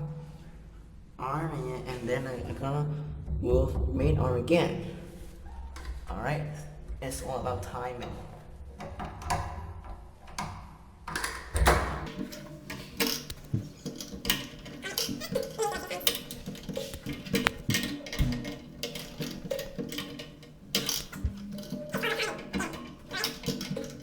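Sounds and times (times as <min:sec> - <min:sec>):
background music: 0:01.4 - 0:06.1
metallic clicks and knocks: 0:08.0 - 0:24.0.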